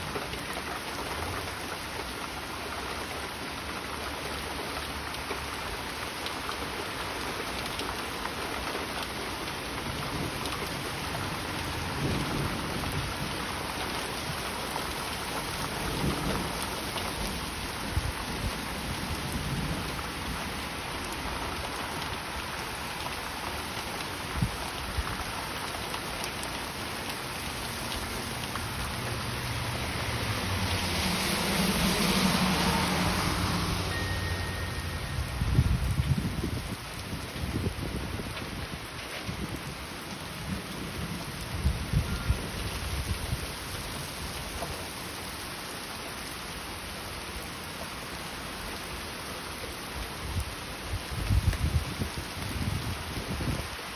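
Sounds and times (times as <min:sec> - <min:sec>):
heavy rain: 0:00.0 - 0:53.9
thunder rumbles: 0:09.8 - 0:14.4, 0:15.2 - 0:20.5, 0:34.8 - 0:43.5.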